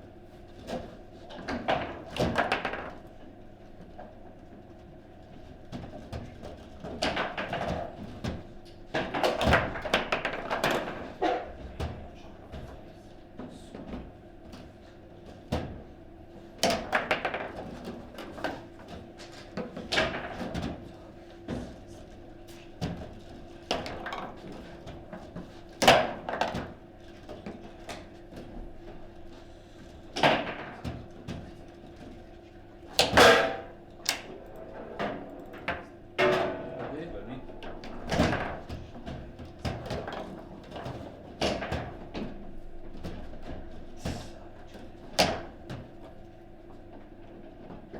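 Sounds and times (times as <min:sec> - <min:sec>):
table football knocks and clacks: 0:05.7 - 0:11.1, 0:16.6 - 0:18.6.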